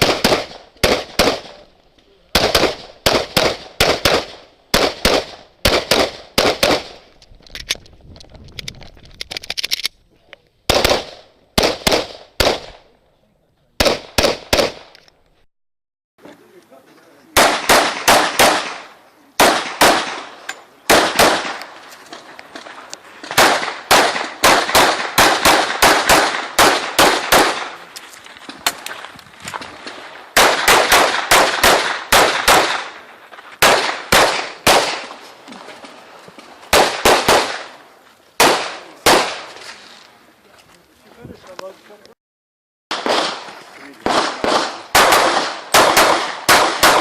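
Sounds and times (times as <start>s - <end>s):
handgun shots with echo: 42.9s - 47.0s.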